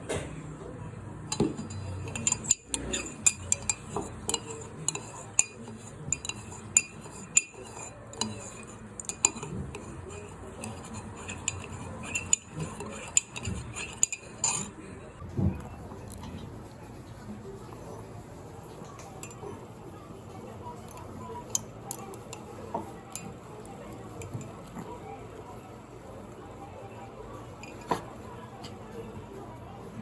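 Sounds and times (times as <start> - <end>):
metal spoon clinking in container: 1.3 - 14.8.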